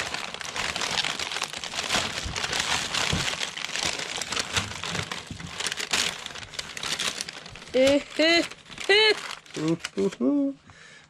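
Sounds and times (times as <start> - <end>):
packaging crinkling and rustling: 0.0 - 10.2.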